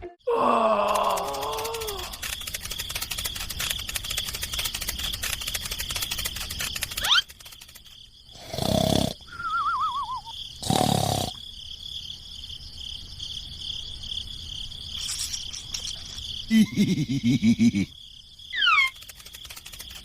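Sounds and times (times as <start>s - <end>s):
high insect-like chirr: 0.4s - 20.0s
wobbling falling whistle: 9.3s - 10.3s.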